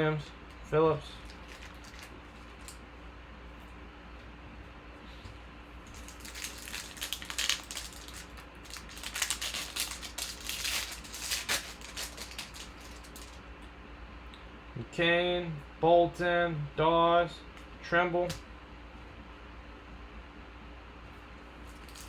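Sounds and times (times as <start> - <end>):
faint steady hum: 0.0 - 22.0
cards being shuffled: 5.9 - 13.4.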